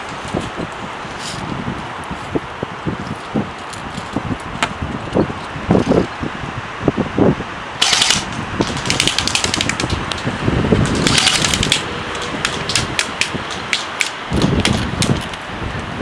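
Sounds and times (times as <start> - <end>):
automatic airsoft gunfire: 7.8 - 14.8.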